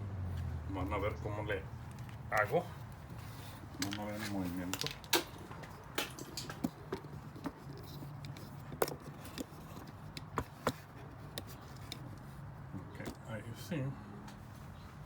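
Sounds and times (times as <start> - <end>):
tools and parts clicking: 4.7 - 10.8.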